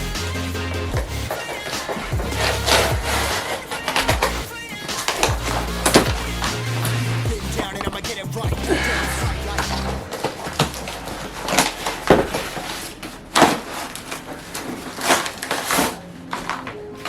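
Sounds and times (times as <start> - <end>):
packaging rustling and scraping: 1.3 - 7.0, 9.5 - 17.0.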